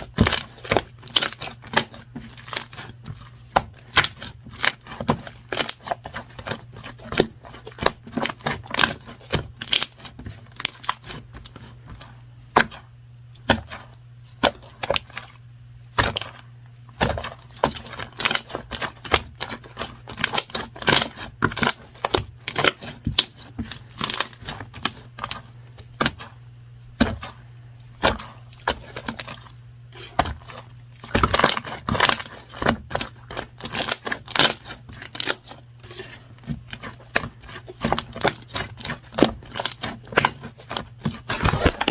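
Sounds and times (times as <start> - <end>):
paper rustling: 31.6 - 41.9.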